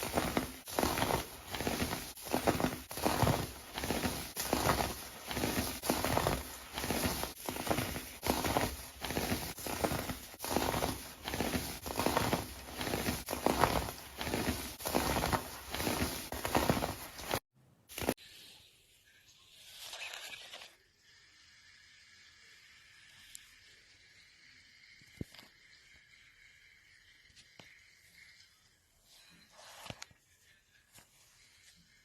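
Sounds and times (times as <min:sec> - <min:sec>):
sand crunching by hand: 0:00.0 - 0:17.4.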